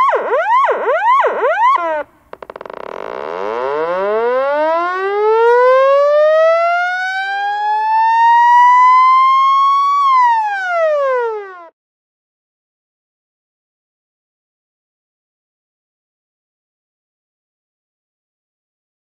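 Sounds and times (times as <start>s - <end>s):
siren wailing: 0.0s - 2.6s, 3.2s - 11.7s.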